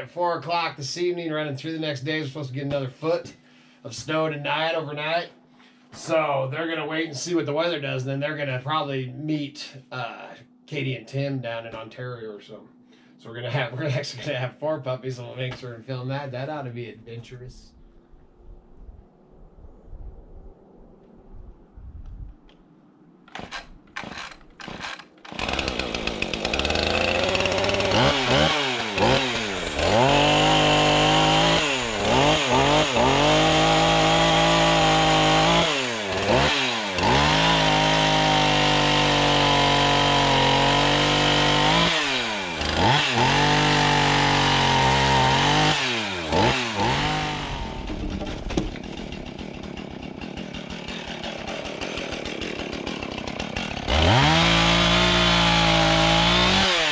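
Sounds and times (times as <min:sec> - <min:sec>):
chainsaw cutting firewood: 0:23.3 - 0:56.9.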